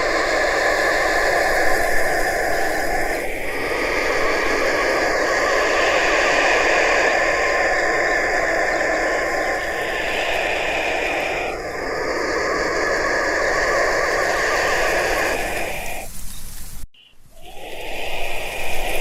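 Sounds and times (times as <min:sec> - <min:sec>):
vulture hissing: 0:00.0 - 0:19.0.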